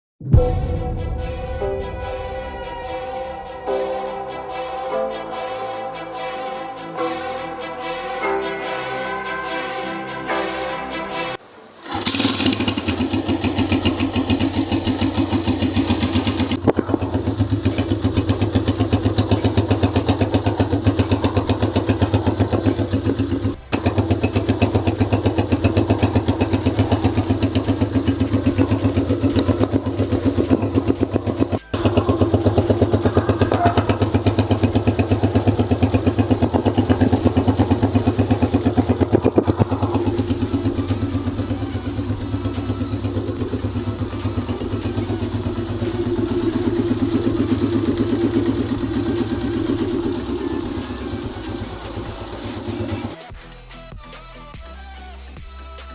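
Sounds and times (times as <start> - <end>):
motorcycle engine idling: 11.4 - 53.4.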